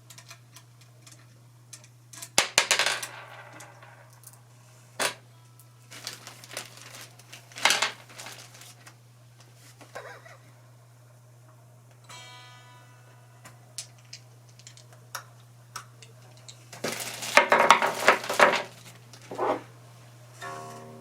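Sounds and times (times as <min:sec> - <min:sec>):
guitar string ringing: 0:12.0 - 0:13.7, 0:20.4 - 0:21.0.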